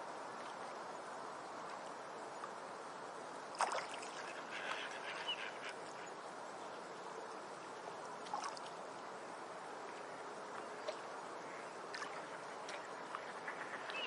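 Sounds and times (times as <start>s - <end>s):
water noise on a pond: 0.0s - 14.0s
water splashing: 3.5s - 6.0s, 8.2s - 9.0s, 11.9s - 14.0s.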